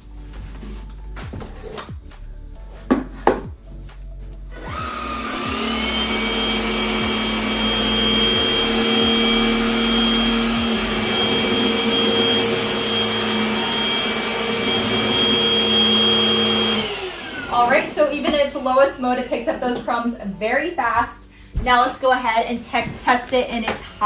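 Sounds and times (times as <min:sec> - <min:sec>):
vacuum motor whine: 0:04.5 - 0:19.4.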